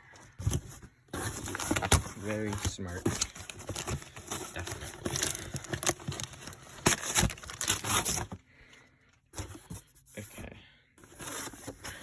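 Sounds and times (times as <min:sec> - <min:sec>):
packaging tape ripping and crinkling: 0:03.2 - 0:08.3.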